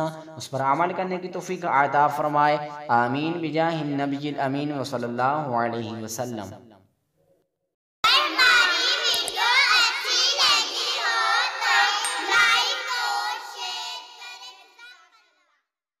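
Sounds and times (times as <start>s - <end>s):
high-pitched singing jingle: 12.0s - 13.3s.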